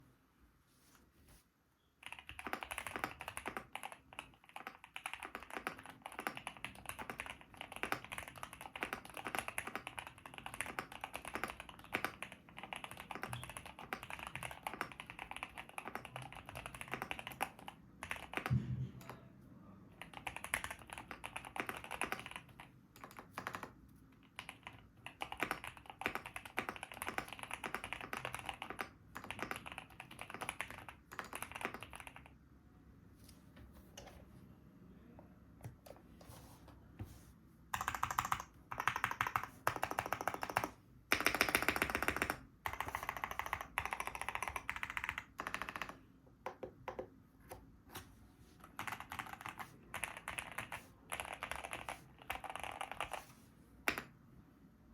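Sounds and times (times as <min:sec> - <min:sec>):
mechanical keyboard typing: 0:02.0 - 0:19.2, 0:20.0 - 0:32.4, 0:37.7 - 0:47.1, 0:48.6 - 0:53.3, 0:53.9 - 0:54.1.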